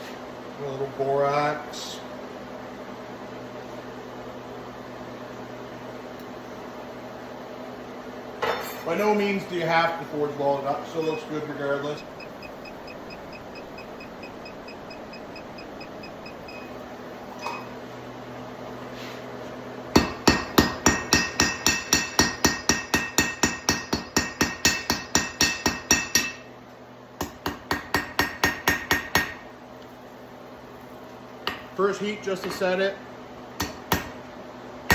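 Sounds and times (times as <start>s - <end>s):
hammer striking steel on anvil: 19.9s - 26.5s, 27.2s - 29.4s, 33.6s - 34.2s.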